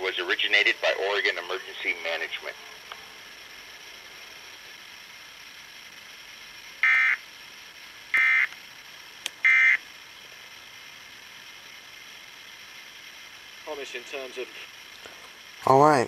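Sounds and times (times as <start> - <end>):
radio hiss: 0.0 - 16.0
digital data tone bursts: 6.8 - 7.3, 8.1 - 8.6, 9.4 - 9.8.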